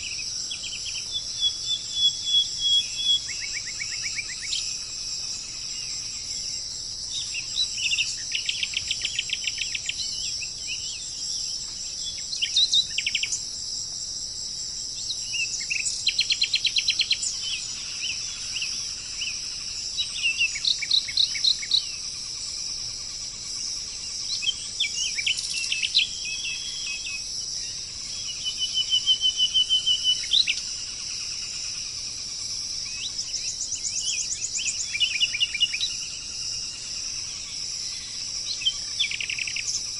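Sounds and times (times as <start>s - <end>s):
high-pitched insect chorus: 0.0s - 39.9s
songbirds trilling: 0.0s - 39.9s.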